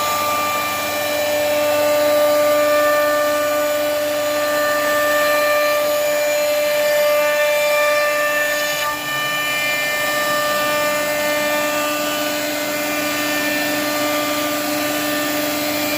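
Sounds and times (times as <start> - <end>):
router spindle whine: 0.0 - 15.9.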